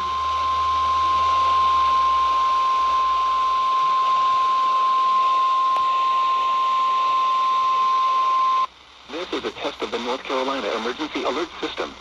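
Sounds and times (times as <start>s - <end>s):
radio hiss: 3.8s - 12.0s.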